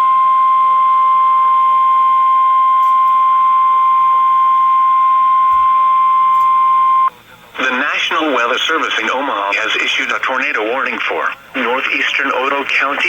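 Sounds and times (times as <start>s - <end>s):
steady high alarm tone: 0.0s - 7.1s.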